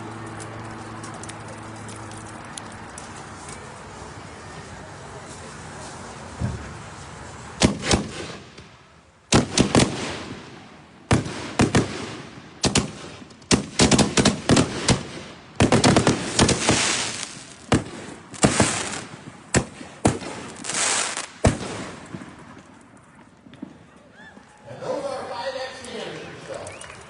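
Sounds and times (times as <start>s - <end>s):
crackling hiss: 3.6s - 22.7s
firework shells banging: 11.1s - 23.0s.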